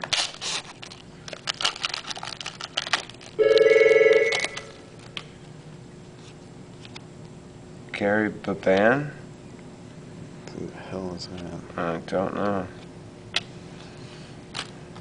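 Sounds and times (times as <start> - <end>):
trading cards rustling: 0.0 - 5.2
telephone ringing: 3.4 - 4.8.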